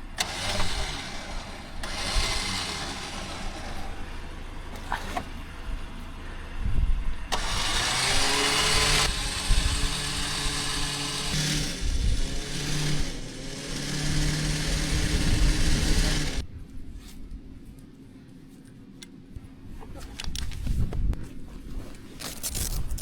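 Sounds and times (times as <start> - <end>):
vehicle engine running: 0.0 - 16.4.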